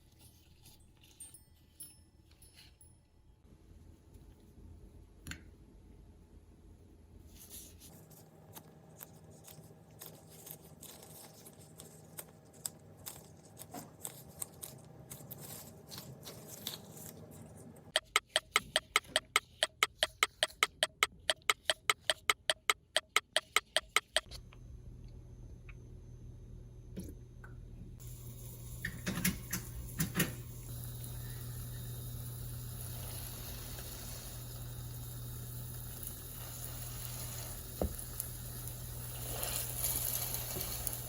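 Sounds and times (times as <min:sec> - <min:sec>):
dough squishing in a bowl: 0:07.4 - 0:22.1, 0:36.2 - 0:41.0
utensil tapping a bowl: 0:18.0 - 0:24.3.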